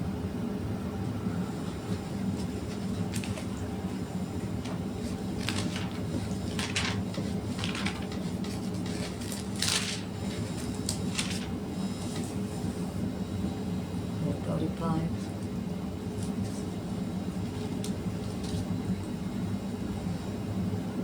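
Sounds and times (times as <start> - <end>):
pages turning: 1.9 - 12.4, 16.1 - 16.8, 17.4 - 18.7.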